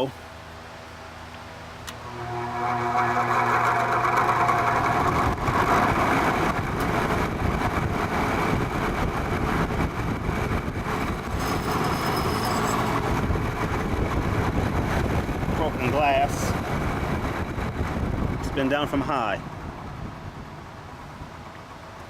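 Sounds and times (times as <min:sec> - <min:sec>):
box fan motor rattling: 0:02.0 - 0:18.2.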